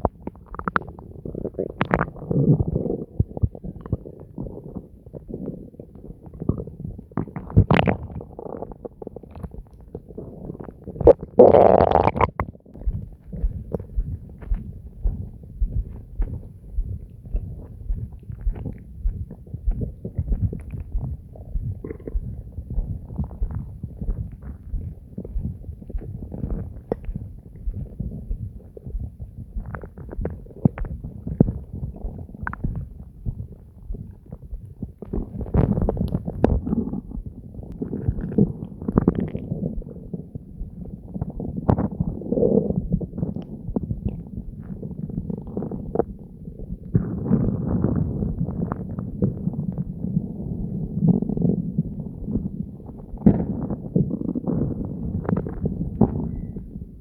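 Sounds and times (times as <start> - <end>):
stomach growling and gurgling: 0.0 - 57.0.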